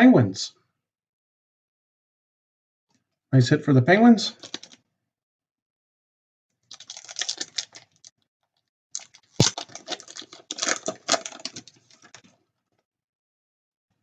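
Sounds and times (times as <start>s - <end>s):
wrapper crinkling and rustling: 4.4s - 4.8s, 6.7s - 8.1s, 9.0s - 12.3s.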